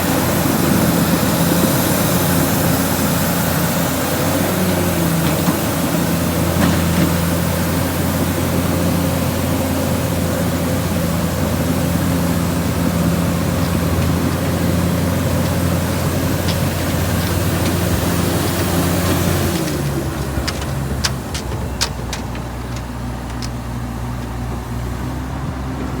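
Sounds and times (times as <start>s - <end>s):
bulldozer diesel engine droning: 0.0s - 26.0s
faint clicks: 19.5s - 24.4s.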